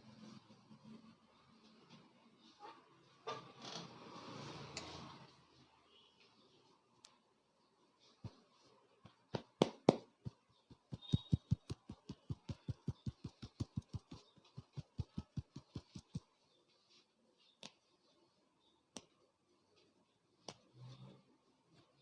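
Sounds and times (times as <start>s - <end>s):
rhythmic hand slaps on head: 9.1s - 16.4s.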